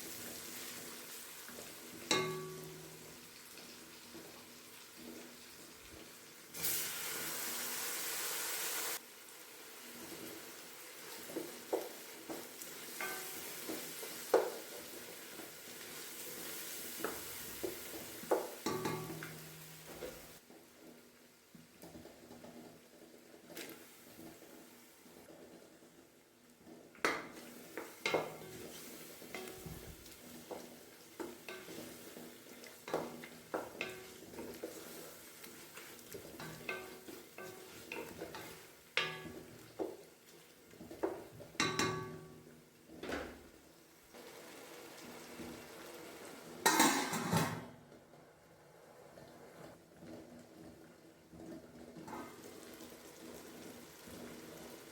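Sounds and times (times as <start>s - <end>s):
food sizzling in a pot: 0.0s - 54.9s
spoon scraping and knocking pot: 17.0s - 20.2s, 27.0s - 35.0s, 35.8s - 40.0s, 40.8s - 42.4s.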